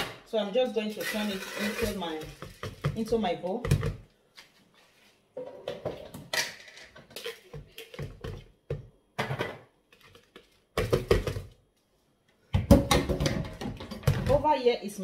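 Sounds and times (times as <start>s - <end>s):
plastic kitchenware knocks and taps: 2.2s - 4.0s, 5.4s - 9.7s, 10.8s - 11.6s, 12.5s - 14.4s.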